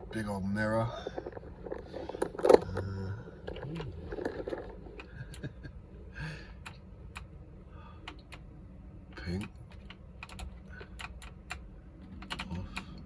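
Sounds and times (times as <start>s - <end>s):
low murmur: 0.0s - 11.0s
soft handling noise: 0.1s - 5.3s.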